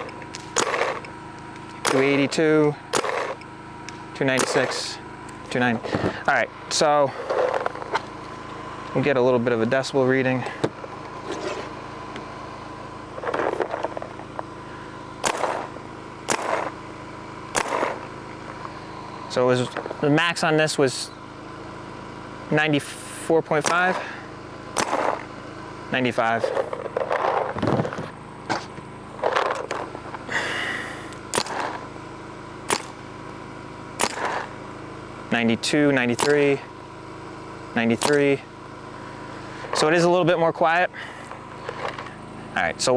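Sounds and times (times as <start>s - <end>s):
paintball marker sharp pops: 0.0s - 4.9s, 15.2s - 16.8s, 17.5s - 18.7s, 23.6s - 24.1s, 24.8s - 25.3s, 31.2s - 31.9s, 32.7s - 33.0s, 34.0s - 34.6s, 36.2s - 36.5s, 38.0s - 38.3s
softer duller burst: 0.0s - 8.0s, 13.2s - 16.9s, 17.5s - 20.3s, 22.7s - 32.0s, 32.7s - 33.2s, 34.0s - 34.6s, 36.0s - 36.6s, 37.8s - 38.4s.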